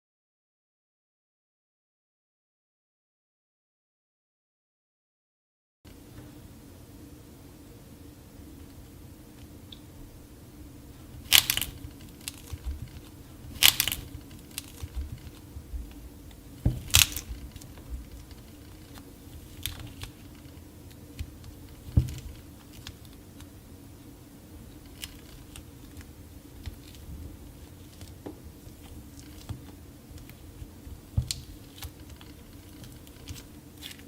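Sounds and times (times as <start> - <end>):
crunchy clay crackles: 10.9 - 23.6, 24.6 - 34.0
hardened clay cracking: 11.2 - 23.5, 24.8 - 34.0.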